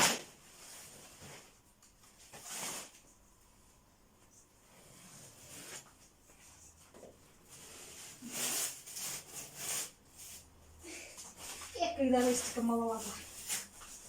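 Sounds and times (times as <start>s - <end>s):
wallpaper scraping and ripping: 0.0s - 3.1s, 4.6s - 6.7s, 7.4s - 14.0s.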